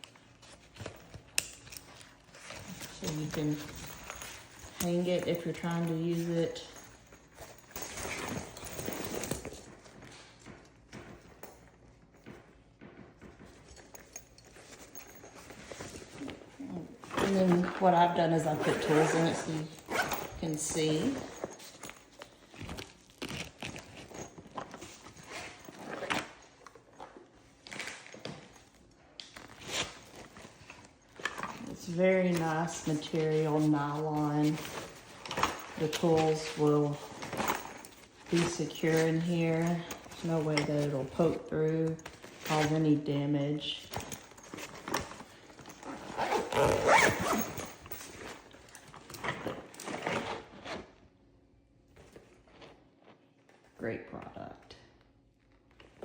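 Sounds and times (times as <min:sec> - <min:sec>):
tool pouch rustling: 0:00.0 - 0:50.9
fabric rustling: 0:27.6 - 0:50.9.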